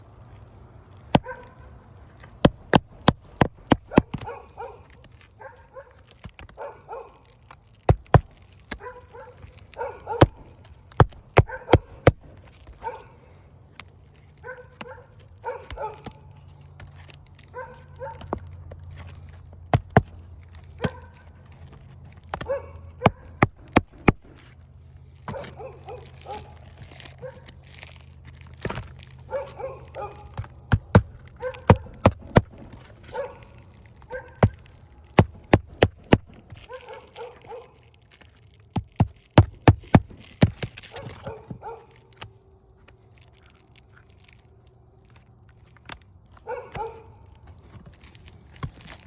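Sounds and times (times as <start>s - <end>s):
dog barking: 1.2s - 1.8s, 4.0s - 6.0s, 6.6s - 7.3s, 8.8s - 10.5s, 11.4s - 12.0s, 12.8s - 13.3s, 14.4s - 16.3s, 17.5s - 18.4s, 20.8s - 21.2s, 22.4s - 23.4s, 25.3s - 26.6s, 27.2s - 27.5s, 29.3s - 30.4s, 31.4s - 32.0s, 33.1s - 34.6s, 36.6s - 37.8s, 40.9s - 42.0s, 46.4s - 47.3s.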